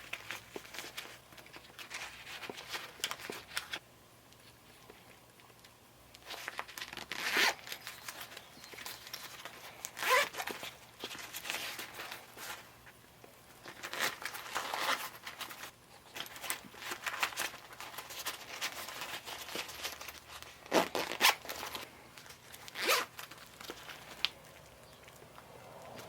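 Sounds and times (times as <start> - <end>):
zipper being pulled: 7.1 - 7.8, 10.0 - 10.6, 20.6 - 21.8, 22.7 - 23.2.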